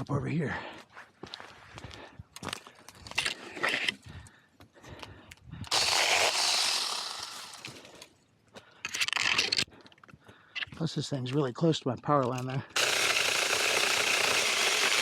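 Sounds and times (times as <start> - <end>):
electric chainsaw cutting branches: 5.7 - 8.0, 12.8 - 15.0.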